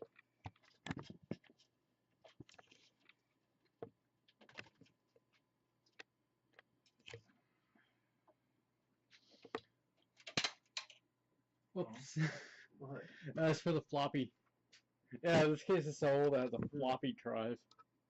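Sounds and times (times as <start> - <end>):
plastic connectors clicking: 10.2 - 11.0.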